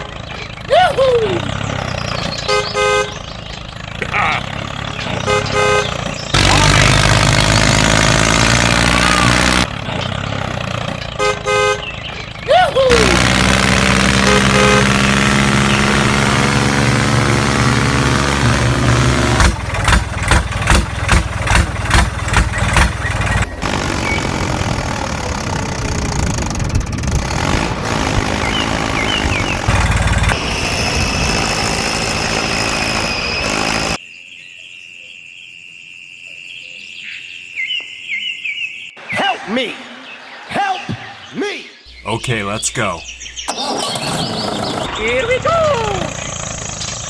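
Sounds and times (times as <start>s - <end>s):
small engine running: 6.3s - 11.2s, 12.9s - 34.0s.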